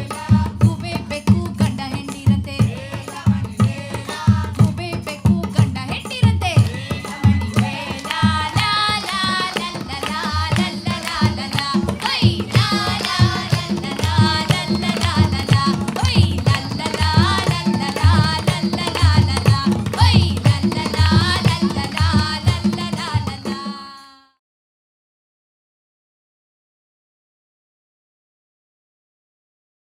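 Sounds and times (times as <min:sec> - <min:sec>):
hand-drum strokes: 0:03.6 - 0:23.8.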